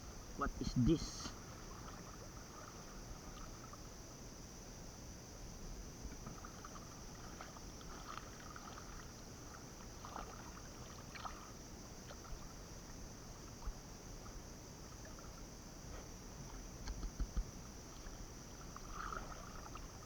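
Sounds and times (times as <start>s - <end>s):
high-pitched hiss: 0.0s - 1.4s
water sloshing and splashing: 1.4s - 3.9s, 6.2s - 12.7s, 17.2s - 20.0s
small knocks in water: 16.9s - 17.5s.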